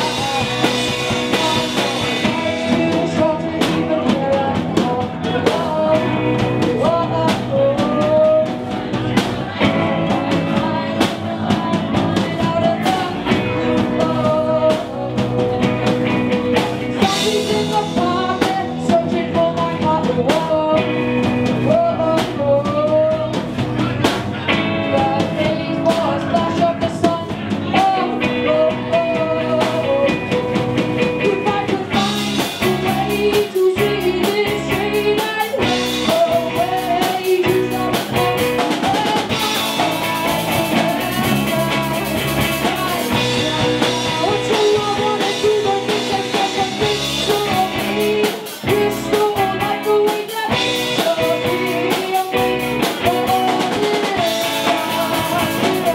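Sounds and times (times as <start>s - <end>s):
person singing: 0.0s - 55.9s
rock band playing: 0.0s - 55.9s.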